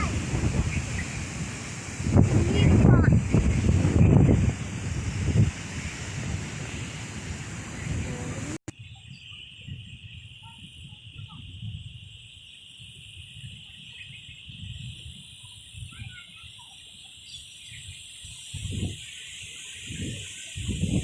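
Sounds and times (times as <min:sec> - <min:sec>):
wind rumbling on microphone: 0:00.0 - 0:21.0
faint bird chirps: 0:08.8 - 0:20.7
insects chirring: 0:08.8 - 0:21.0.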